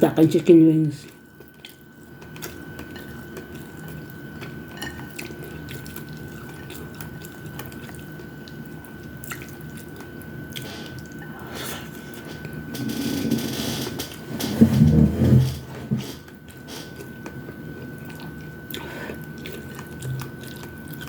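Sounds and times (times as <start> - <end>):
wet chewing sounds: 1.0 - 12.7, 16.3 - 21.0.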